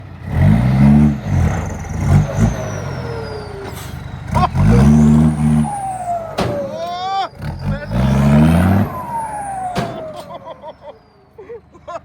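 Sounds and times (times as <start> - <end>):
falling whistle-like tones: 2.3 - 11.4.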